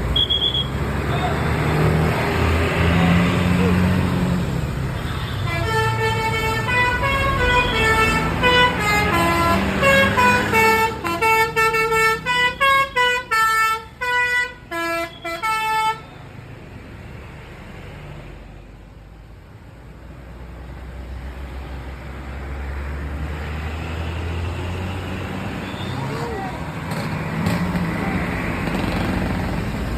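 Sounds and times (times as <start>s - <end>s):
bus musical air horn tune: 5.1s - 16.2s.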